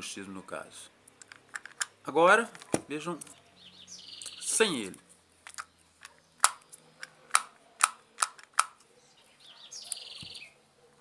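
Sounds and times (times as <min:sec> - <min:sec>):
bird chirping: 0:01.9 - 0:11.0
teeth clicking together: 0:05.5 - 0:08.8.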